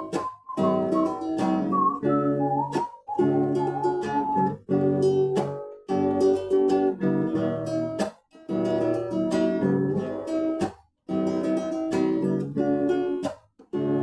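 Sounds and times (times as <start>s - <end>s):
acoustic guitar strumming chords: 0.0s - 10.6s.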